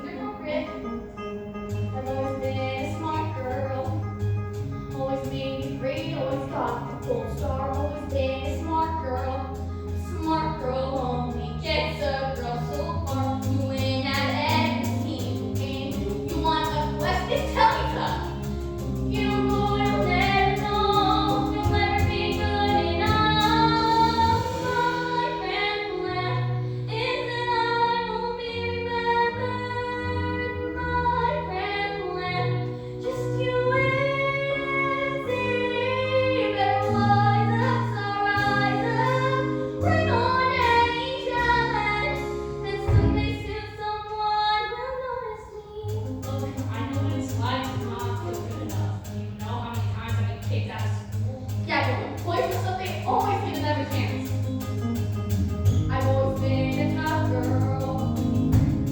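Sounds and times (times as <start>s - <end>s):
instrumental accompaniment: 0.0s - 44.6s, 45.7s - 58.9s
girl singing: 19.1s - 48.6s.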